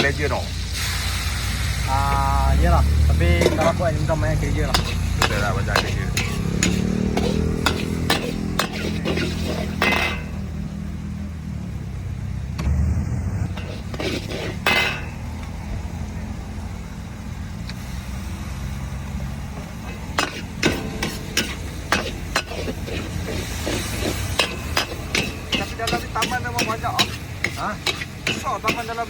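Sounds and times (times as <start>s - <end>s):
steady low hum: 2.1s - 28.6s
metal spatula clanging on wok: 3.4s - 10.5s, 13.6s - 15.2s, 19.8s - 29.0s.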